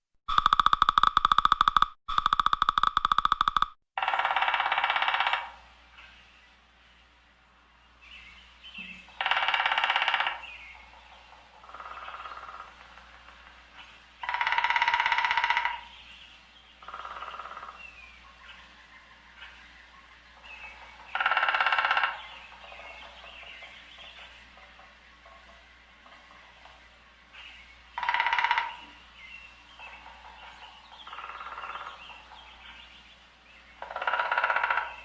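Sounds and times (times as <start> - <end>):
woodpecker drumming on wood: 0.2 - 5.6, 9.0 - 16.0, 16.8 - 17.8, 20.5 - 26.8, 27.9 - 29.0, 29.7 - 32.9, 33.7 - 35.0.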